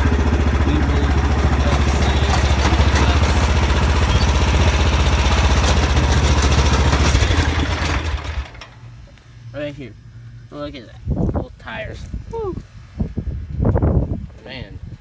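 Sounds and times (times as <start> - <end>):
tires spinning: 0.0 - 8.6
lawn tractor engine running loud: 0.0 - 8.9.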